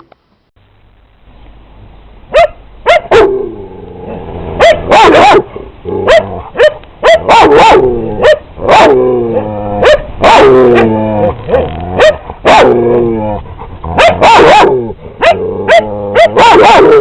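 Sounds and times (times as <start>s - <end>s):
dog barking: 2.3s - 3.4s, 4.6s - 9.0s, 9.8s - 10.9s, 11.5s - 12.8s, 13.9s - 17.0s.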